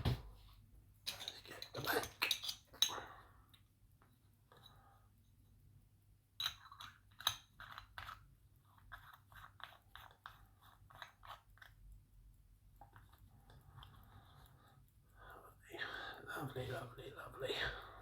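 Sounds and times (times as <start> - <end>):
small metal clicks and scrapes: 1.0 - 4.8, 6.4 - 15.0.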